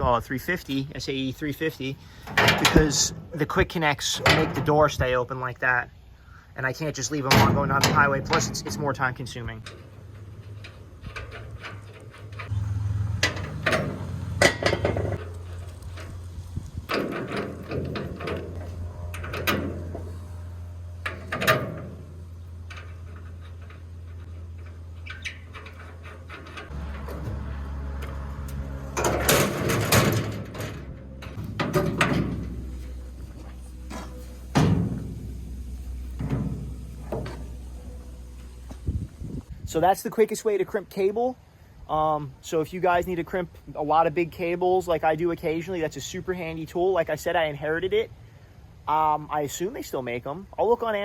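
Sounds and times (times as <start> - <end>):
steady low hum: 0.0 - 39.8.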